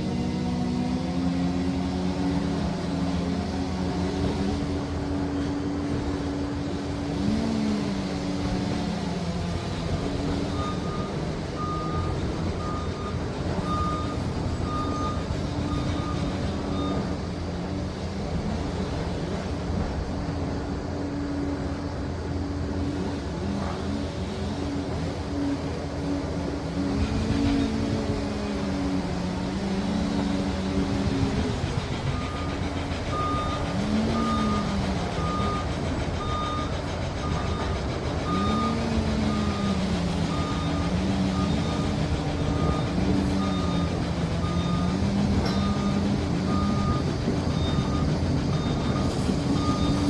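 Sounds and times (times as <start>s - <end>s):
dozer diesel engine running: 0.0s - 50.0s
reverse alarm beeping: 10.3s - 17.2s, 32.2s - 50.0s.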